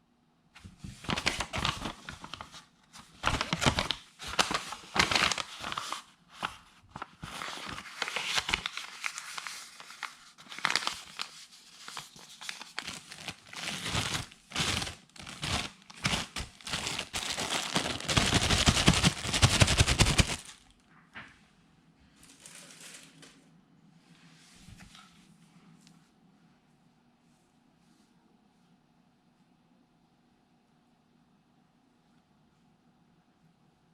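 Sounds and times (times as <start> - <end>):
packaging crinkling and rustling: 0.8 - 20.8, 22.2 - 23.3
faint handling noises: 4.3 - 28.8.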